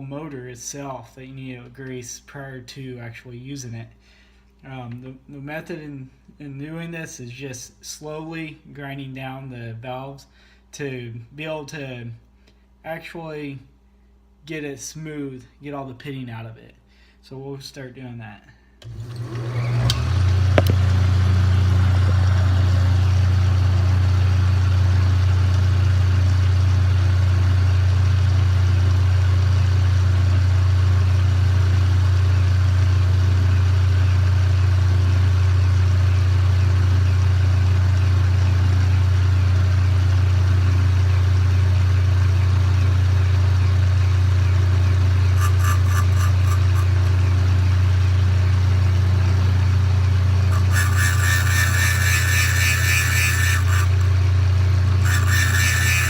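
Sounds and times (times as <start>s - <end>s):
electric motor humming: 45.4s - 47.2s, 50.5s - 56.0s.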